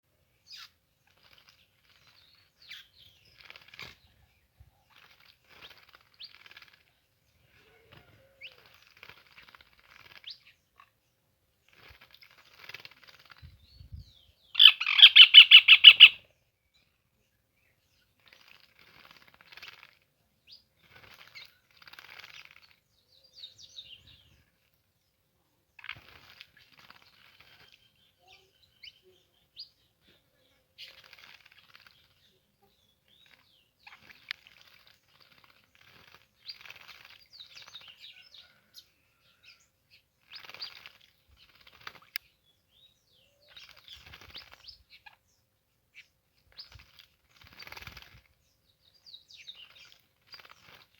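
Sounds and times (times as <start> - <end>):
bird chirps: 0.3 - 24.7, 25.7 - 50.9
bird wings fluttering: 1.1 - 2.2, 3.2 - 4.0, 4.9 - 6.9, 7.8 - 10.4, 11.7 - 13.6, 18.2 - 20.0, 20.8 - 22.8, 25.8 - 27.8, 30.8 - 32.2, 33.2 - 37.9, 40.2 - 42.2, 43.5 - 44.8, 46.5 - 48.4, 49.6 - 50.9
rapid bird call notes: 14.6 - 16.2.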